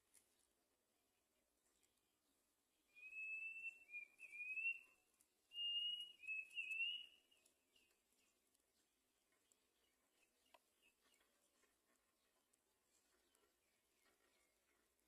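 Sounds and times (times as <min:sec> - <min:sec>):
bird high whistled calls: 0:02.9 - 0:07.4.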